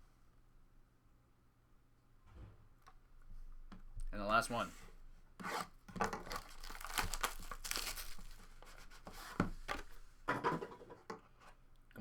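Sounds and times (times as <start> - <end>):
plastic ripping: 6.0 - 8.8
plastic wrapping crinkling: 6.0 - 8.8.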